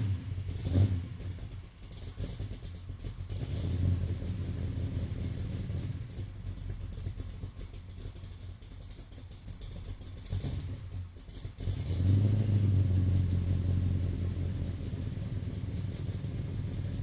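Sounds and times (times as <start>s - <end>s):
car engine idling through exhaust: 0.0s - 17.0s.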